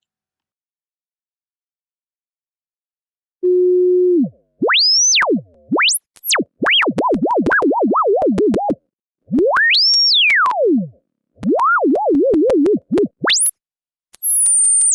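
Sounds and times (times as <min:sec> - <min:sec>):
clicks at pitch jumps: 0:04.6 - 0:08.8, 0:11.4 - 0:13.6.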